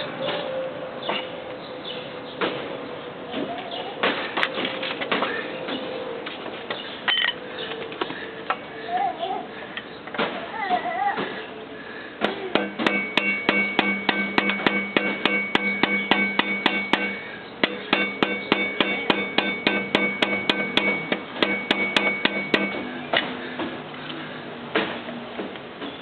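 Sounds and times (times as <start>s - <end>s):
hammer striking copper tube: 12.5s - 22.9s.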